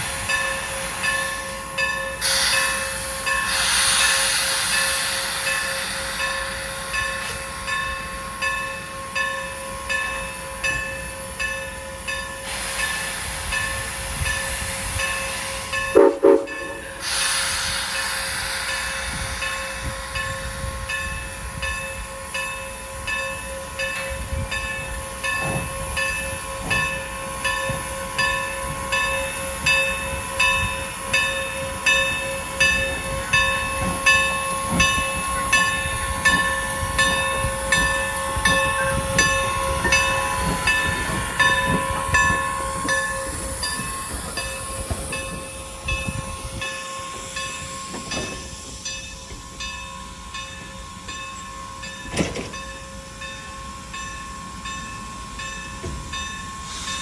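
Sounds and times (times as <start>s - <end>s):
steam train rumble and clatter: 0.0s - 57.0s
bell dinging: 16.0s - 17.0s.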